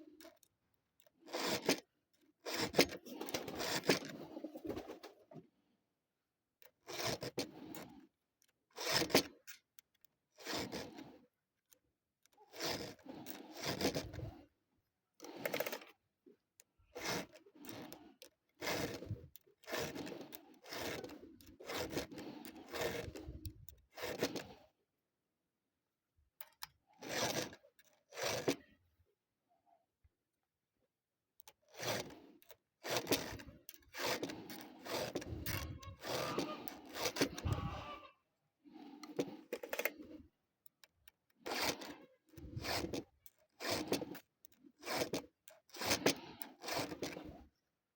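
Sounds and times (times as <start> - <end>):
short scraping strokes: 32.8 - 38.1, 41.4 - 47.5.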